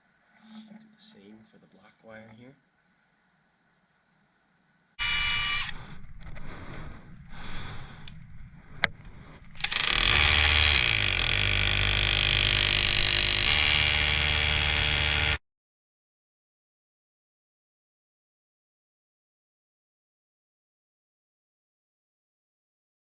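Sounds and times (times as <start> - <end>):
power drill boring into brick: 5.0 - 5.8, 9.6 - 15.4.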